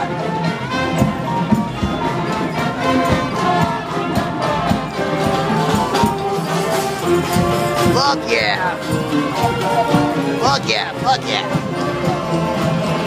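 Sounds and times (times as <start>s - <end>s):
parade band music: 0.0s - 13.0s.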